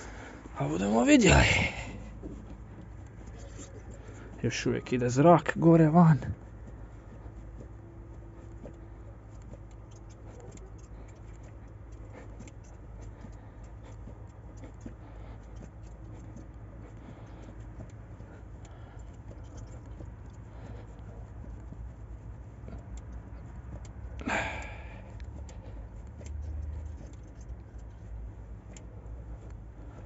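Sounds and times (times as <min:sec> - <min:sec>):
low steady hum: 0:00.0 - 0:30.0
faint clicking and ticking: 0:06.2 - 0:30.0.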